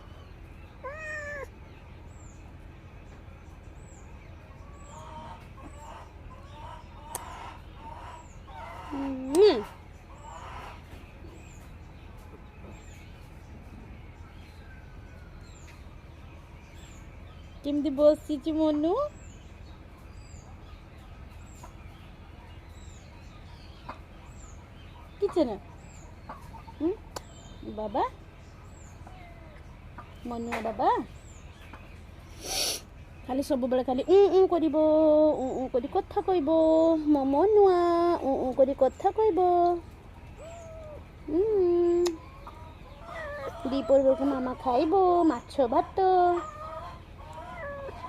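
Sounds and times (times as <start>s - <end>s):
birds calling: 0.0s - 48.0s
short lower bird calls: 32.2s - 33.0s.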